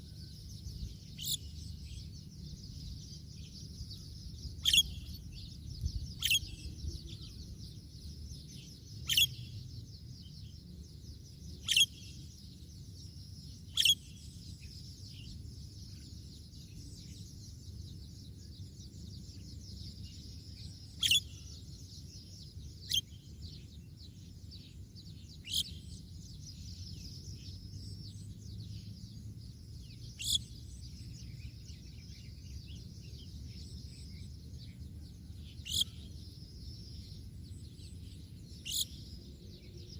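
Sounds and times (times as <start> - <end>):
birds twittering: 0.0 - 39.9
sharp bird calls: 0.8 - 3.2, 4.0 - 9.6, 11.5 - 12.3, 13.6 - 14.3, 20.2 - 21.7, 22.7 - 23.2, 25.4 - 26.0, 30.0 - 31.0, 35.6 - 36.1, 38.6 - 39.8.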